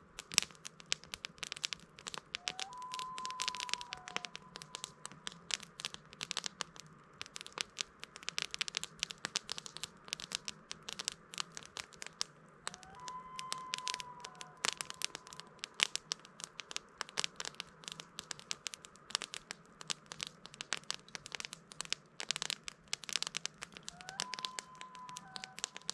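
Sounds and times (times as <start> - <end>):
campfire crackling: 0.0 - 25.9
faint whistle-like tone: 2.4 - 5.1, 12.6 - 15.6, 23.9 - 25.9.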